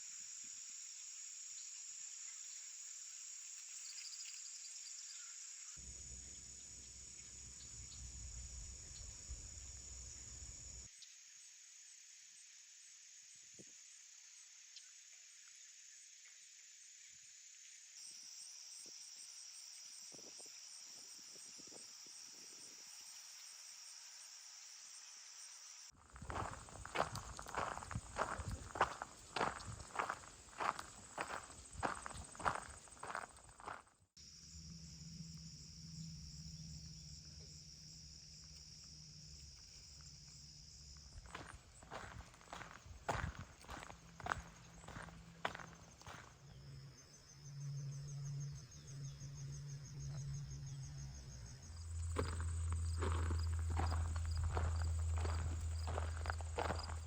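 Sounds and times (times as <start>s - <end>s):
crickets trilling: 0.0s - 57.0s
soft footsteps on road: 26.0s - 33.9s, 40.8s - 46.4s, 52.0s - 57.0s
low hum: 34.3s - 57.0s.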